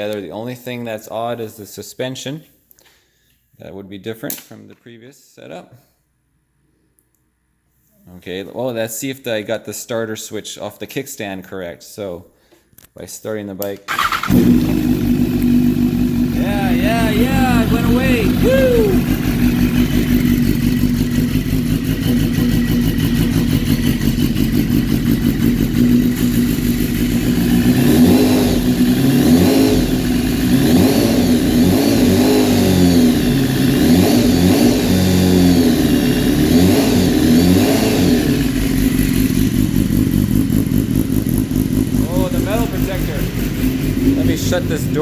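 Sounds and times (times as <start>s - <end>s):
motorcycle engine revving: 13.9s - 45.0s.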